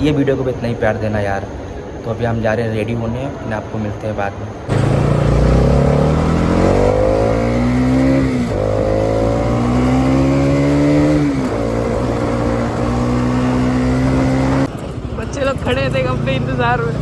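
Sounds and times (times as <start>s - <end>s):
motorcycle engine accelerating: 4.7s - 17.0s.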